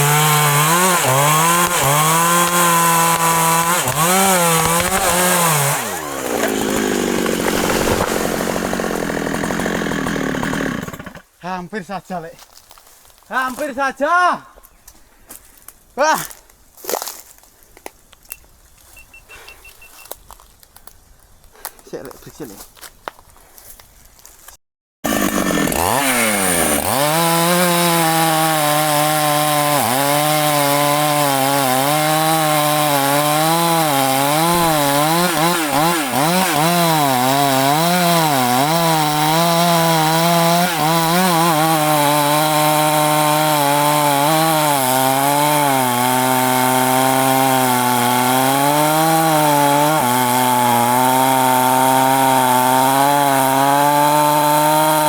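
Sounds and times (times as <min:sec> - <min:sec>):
chainsaw cutting wood: 0:00.0 - 0:11.3, 0:25.0 - 0:55.0.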